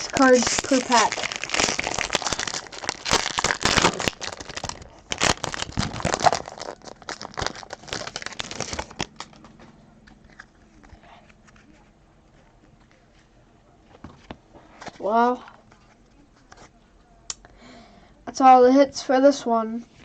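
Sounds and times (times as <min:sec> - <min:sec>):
foil wrapper crinkling: 0:00.0 - 0:11.9.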